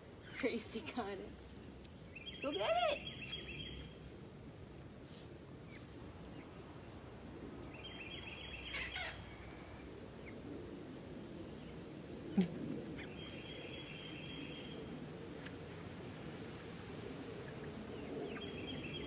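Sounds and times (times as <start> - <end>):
chickens trilling chirps: 5.6 - 10.4, 11.4 - 14.7.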